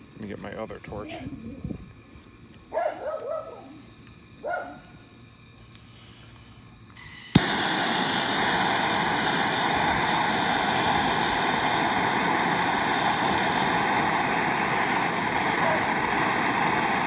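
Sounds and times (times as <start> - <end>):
gas hissing: 0.0 - 17.0
torch flame roaring: 3.4 - 17.0
igniter click: 7.0 - 12.5.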